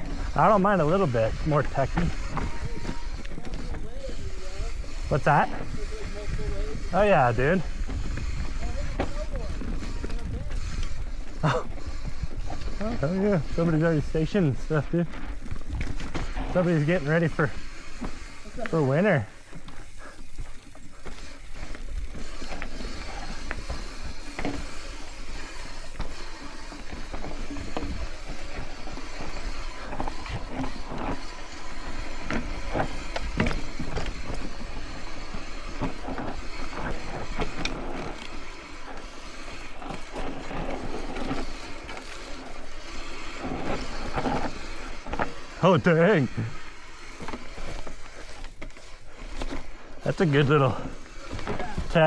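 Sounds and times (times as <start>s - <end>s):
bike rattling over bumps: 0.0s - 52.0s
bike tyres crunching over rock: 0.0s - 52.0s
wind on microphone: 1.3s - 13.6s.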